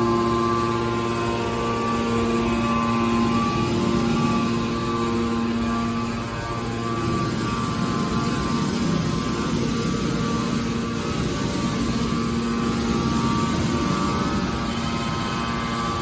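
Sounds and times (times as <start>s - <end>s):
hydraulic baler machine hum: 0.0s - 16.0s.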